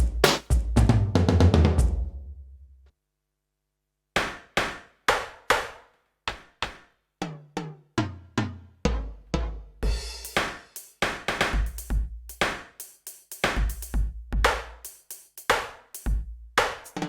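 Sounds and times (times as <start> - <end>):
electronic snare drum hits: 0.0 - 2.0, 9.9 - 12.8, 13.4 - 14.7.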